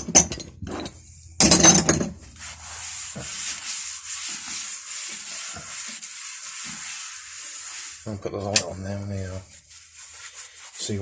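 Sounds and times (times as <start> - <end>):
steady hiss: 2.4 - 11.0.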